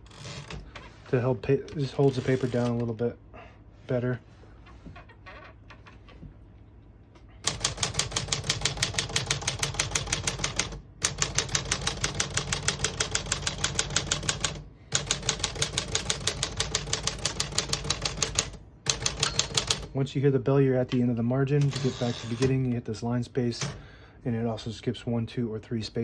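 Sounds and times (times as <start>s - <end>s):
typewriter typing: 0.0s - 0.6s, 1.9s - 2.8s, 7.4s - 19.9s, 21.6s - 22.7s.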